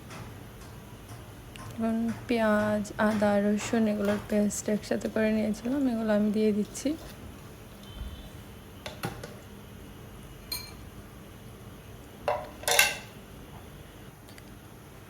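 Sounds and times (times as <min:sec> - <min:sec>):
utensil knocking on cookware: 0:12.3 - 0:13.1.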